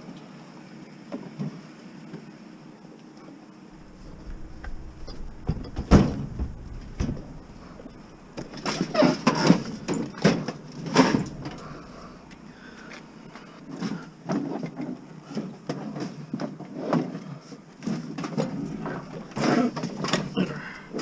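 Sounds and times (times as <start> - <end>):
scrap metal knocks and scrapes: 3.8 - 14.0.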